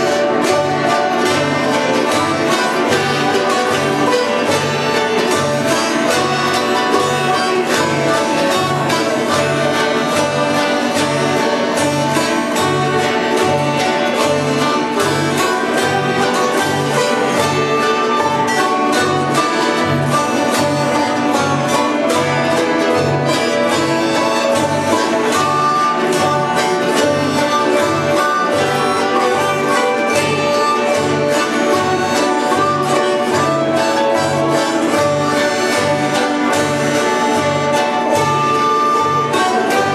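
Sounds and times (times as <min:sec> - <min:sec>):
banjo: 0:00.0 - 0:39.9
fiddle: 0:00.0 - 0:39.9
guitar: 0:00.0 - 0:39.9.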